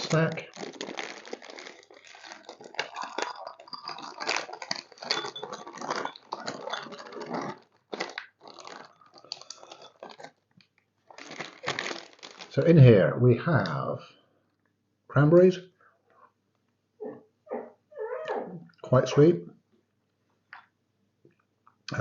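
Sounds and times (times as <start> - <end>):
plastic packet crinkling: 0.0 - 12.7.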